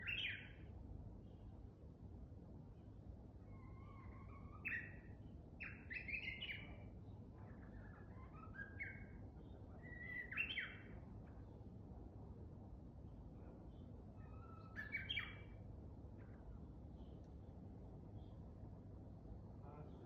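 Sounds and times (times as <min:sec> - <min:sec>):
bird whistled song phrases: 0:00.0 - 0:00.6, 0:03.6 - 0:05.0, 0:05.6 - 0:06.8, 0:07.8 - 0:09.2, 0:09.8 - 0:10.9, 0:14.2 - 0:15.5.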